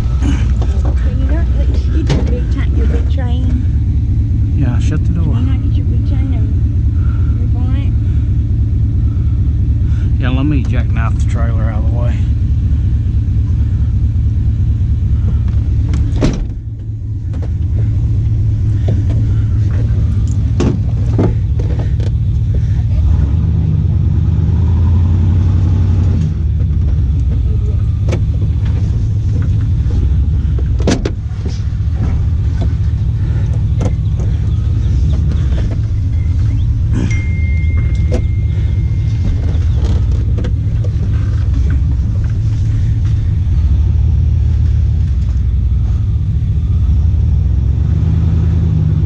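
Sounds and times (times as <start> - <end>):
vehicle engine running: 0.0 - 49.0
sharp knocks and clanks: 15.2 - 22.6, 26.1 - 42.4.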